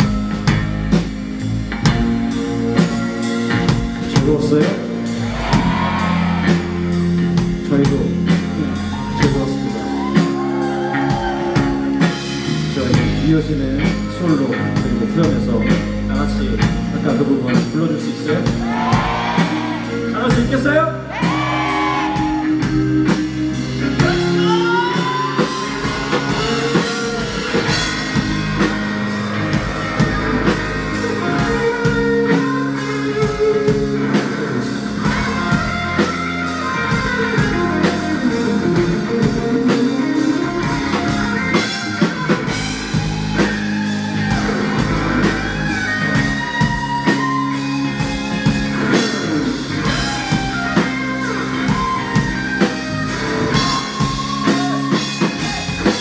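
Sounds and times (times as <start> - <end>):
drum kit playing: 0.0 - 56.0
electric guitar solo: 8.2 - 12.7, 21.0 - 56.0.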